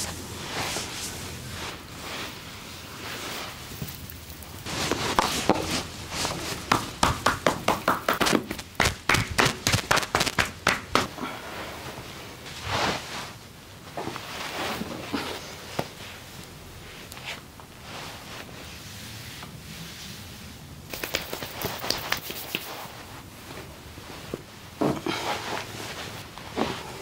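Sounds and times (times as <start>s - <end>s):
hands rubbing skin: 3.0s - 11.1s, 20.9s - 23.1s.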